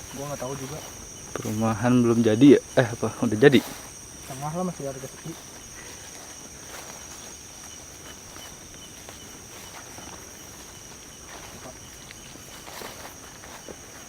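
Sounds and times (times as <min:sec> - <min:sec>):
crickets chirring: 0:00.0 - 0:14.0
rustles and steps in grass: 0:00.0 - 0:14.0.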